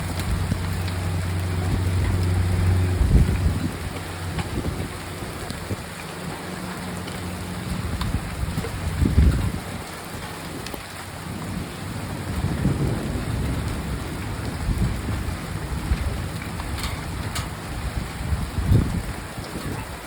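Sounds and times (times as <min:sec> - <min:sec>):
hail and rain pattering: 0:00.0 - 0:20.0
low rumbles: 0:00.0 - 0:20.0.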